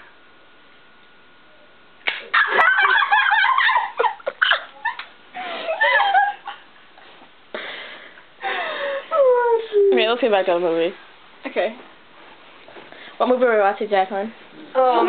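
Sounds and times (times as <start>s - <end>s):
young women giggling and laughing: 2.3s - 6.8s.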